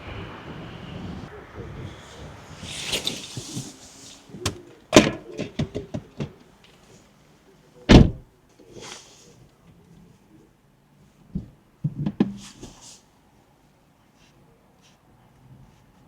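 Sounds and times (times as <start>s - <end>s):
car door shutting thud: 7.9s - 8.2s.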